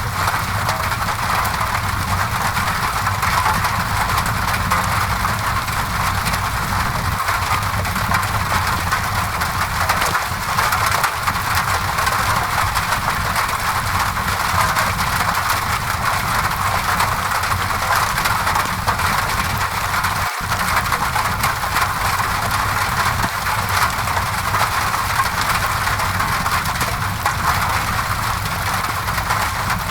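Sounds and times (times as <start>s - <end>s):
low steady rumble: 0.0s - 29.9s
rain on a window: 0.0s - 29.9s.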